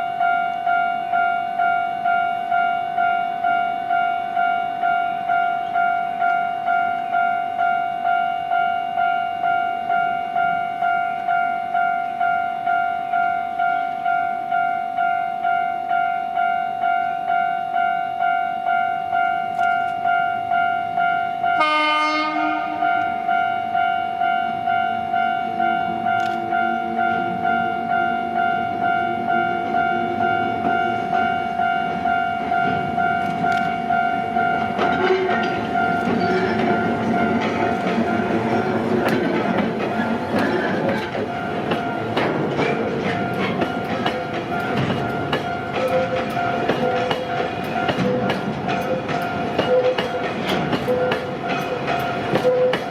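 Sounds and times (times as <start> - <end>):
crossing bell ringing: 0.0 - 52.9
locomotive horn blast: 21.6 - 23.1, 52.4 - 52.9
level crossing bell ringing: 22.8 - 39.0, 42.8 - 52.9
train wheels clattering over rail joints: 32.6 - 52.9.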